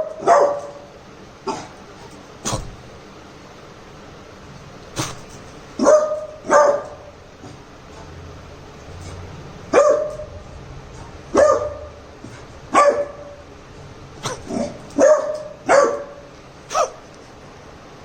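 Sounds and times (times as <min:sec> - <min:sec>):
puppy barking: 0:00.0 - 0:00.9, 0:05.8 - 0:07.1, 0:09.0 - 0:10.4, 0:11.3 - 0:13.4, 0:14.2 - 0:17.1.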